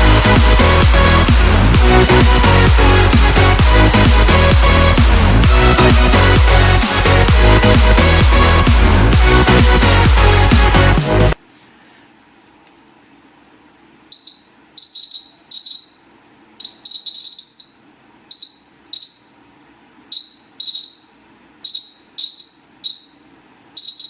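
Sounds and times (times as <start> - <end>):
high-pitched alarm beeps: 14.1 - 19.4, 20.1 - 24.0.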